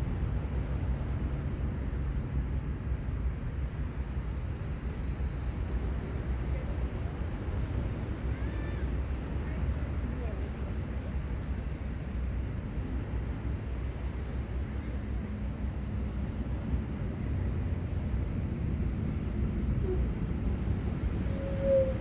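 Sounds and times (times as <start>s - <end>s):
low seaside rumble: 5.4s - 22.0s.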